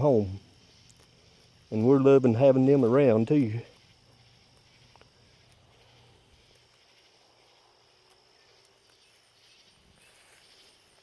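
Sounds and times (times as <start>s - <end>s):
high-pitched insect trilling: 0.0s - 11.0s.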